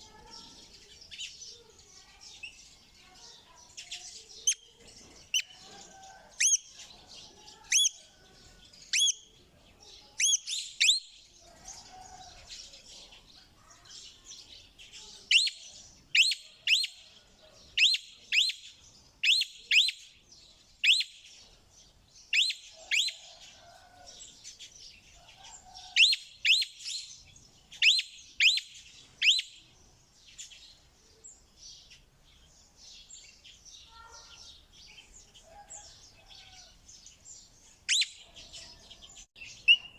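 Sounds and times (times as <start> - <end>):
faint continuous chattering: 0.0 - 17.8, 33.8 - 34.4
parrot high-pitched calls: 22.3 - 23.2.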